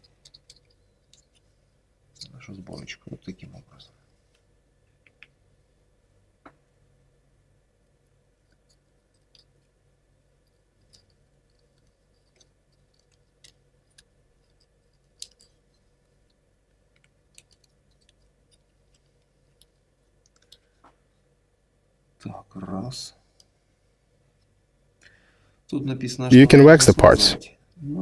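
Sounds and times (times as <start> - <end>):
plywood parts clicking and tapping: 0.0 - 1.5, 10.4 - 15.8, 16.9 - 21.0
faint steady hum: 0.0 - 28.0.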